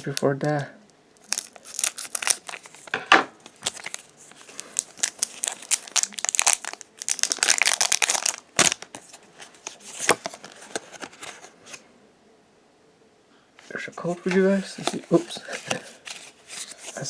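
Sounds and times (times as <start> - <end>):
foil wrapper crinkling and tearing: 1.2 - 11.4.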